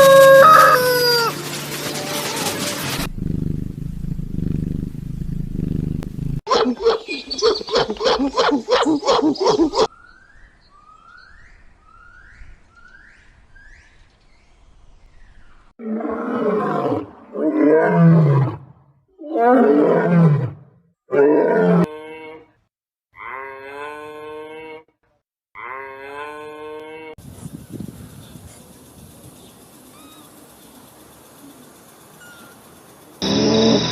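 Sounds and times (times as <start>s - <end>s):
higher steady animal calls: 0.0s - 1.4s, 31.4s - 33.9s
rough farm animal calls: 0.0s - 1.4s.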